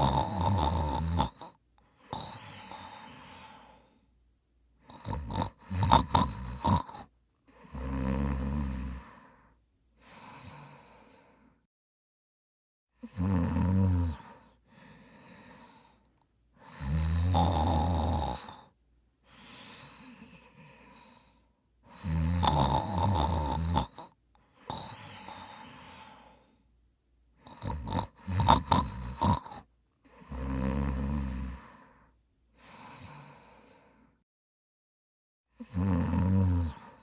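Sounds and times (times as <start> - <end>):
person snoring loudly: 0.0 - 3.8, 4.8 - 9.3, 13.0 - 15.9, 16.6 - 18.7, 21.9 - 26.4, 27.4 - 32.0, 35.6 - 37.0
short snorts: 0.0 - 3.8, 4.9 - 9.2, 21.9 - 26.4, 27.4 - 31.9
quiet breath: 1.2 - 4.2, 6.6 - 11.7, 14.2 - 16.9, 18.2 - 22.2, 23.8 - 28.6, 29.2 - 34.2, 36.7 - 37.0.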